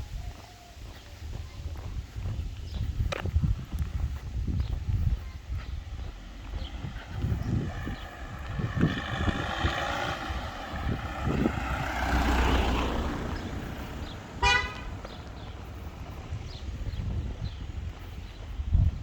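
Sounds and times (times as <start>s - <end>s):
motor vehicle engine passing: 6.0s - 18.6s
short horn toot: 14.4s - 15.0s.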